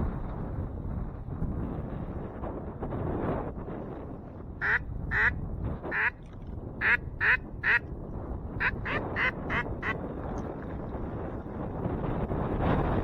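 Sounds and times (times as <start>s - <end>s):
wind noise: 0.0s - 13.0s
duck quacking: 4.6s - 5.3s, 5.9s - 6.2s, 6.8s - 7.9s, 8.6s - 10.0s.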